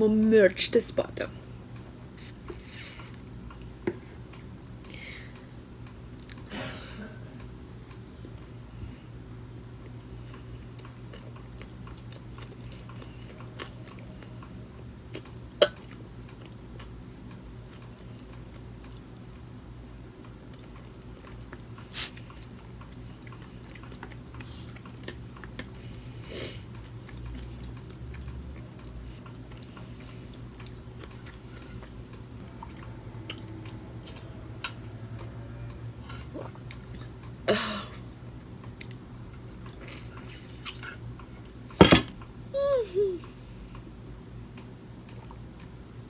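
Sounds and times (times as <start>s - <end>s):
person chewing food: 9.8s - 19.4s, 20.0s - 34.3s, 36.0s - 37.4s.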